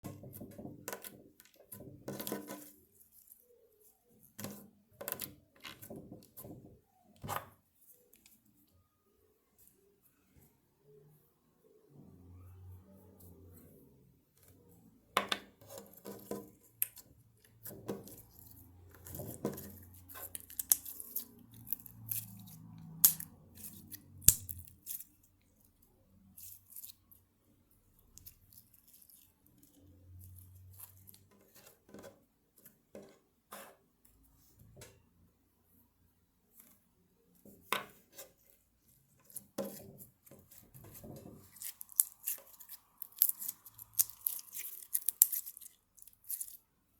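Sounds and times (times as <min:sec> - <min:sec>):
slime clicking and crackling: 0:19.0 - 0:25.2, 0:41.4 - 0:46.6.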